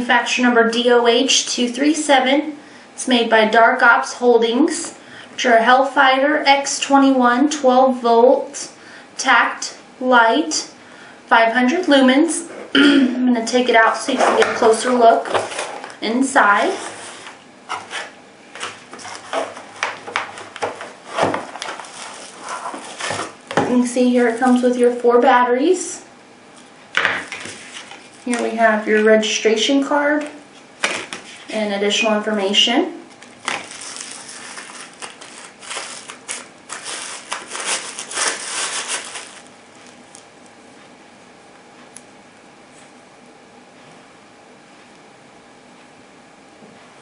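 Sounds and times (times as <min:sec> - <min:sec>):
packaging knocks and rustles: 0:18.6 - 0:23.7, 0:30.8 - 0:31.3, 0:33.1 - 0:40.2.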